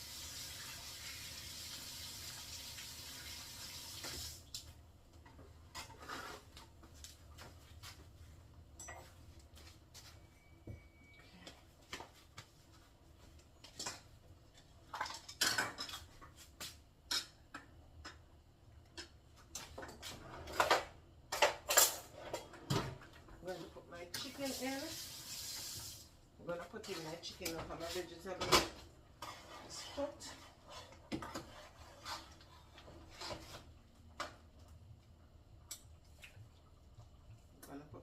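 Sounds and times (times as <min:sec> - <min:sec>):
kitchen tap running: 0:00.0 - 0:04.5, 0:24.2 - 0:26.1
dishes and pots clinking: 0:08.8 - 0:09.2, 0:14.9 - 0:16.2.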